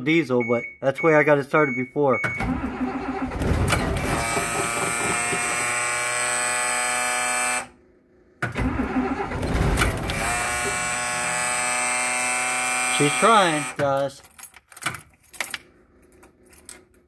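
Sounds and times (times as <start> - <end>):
starter motor cranking diesel engine: 2.4 - 5.9, 8.5 - 11.4.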